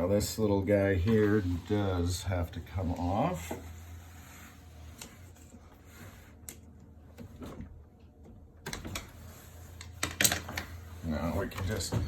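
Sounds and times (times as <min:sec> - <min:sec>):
low steady hum: 0:00.0 - 0:12.0
clicks and knocks of small parts: 0:09.8 - 0:10.7.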